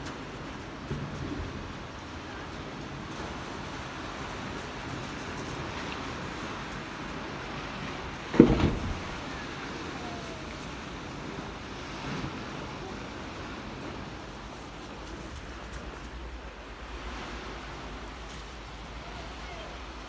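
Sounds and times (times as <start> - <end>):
surf: 0.0 - 20.0
wind: 0.0 - 20.0
loud thump: 8.3 - 9.4.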